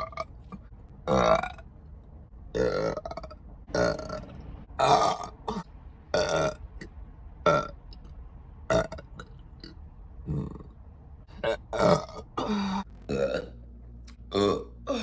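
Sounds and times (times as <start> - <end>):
person burping: 11.4 - 13.6, 14.3 - 15.0.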